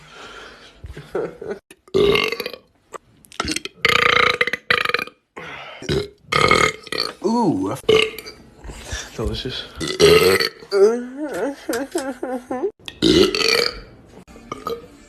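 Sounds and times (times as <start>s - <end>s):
person belching loudly: 1.8s - 2.7s, 3.4s - 5.2s, 5.8s - 8.2s, 9.8s - 10.7s, 12.9s - 13.9s, 14.5s - 14.9s.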